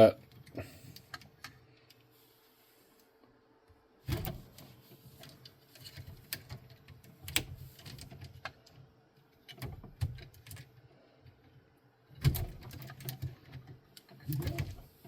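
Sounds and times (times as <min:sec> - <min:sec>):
plastic parts clicking and knocking: 0:04.1 - 0:15.0.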